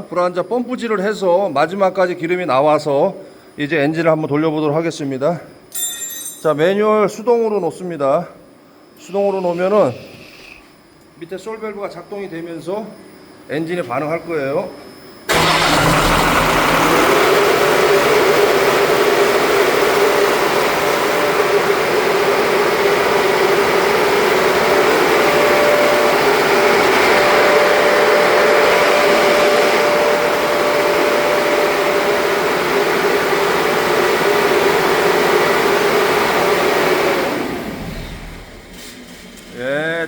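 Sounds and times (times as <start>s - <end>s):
diesel engine running steadily: 15.3s - 38.9s.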